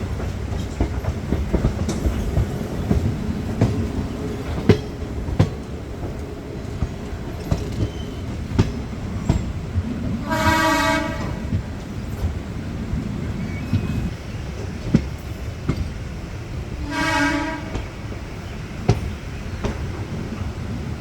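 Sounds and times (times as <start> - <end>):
wheels clicking over rail joints: 0.0 - 16.1
train rumbling: 0.0 - 21.0
train horn blast: 10.2 - 11.5, 16.8 - 17.8.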